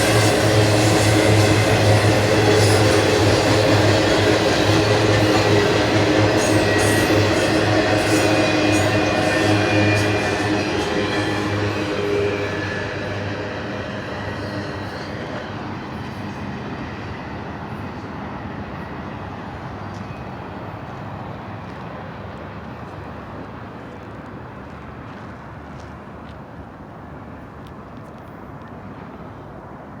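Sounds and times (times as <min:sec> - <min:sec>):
freight train rumbling on rails: 0:00.0 - 0:30.0.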